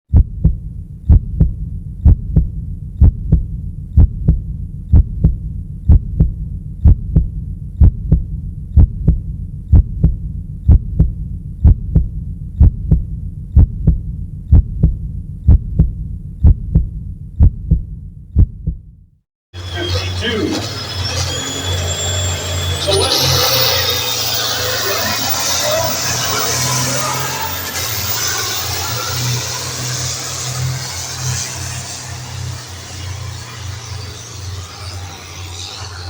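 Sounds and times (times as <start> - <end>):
heartbeat double thump: 0.1 - 19.0
low hum: 0.1 - 19.0, 19.6 - 36.0.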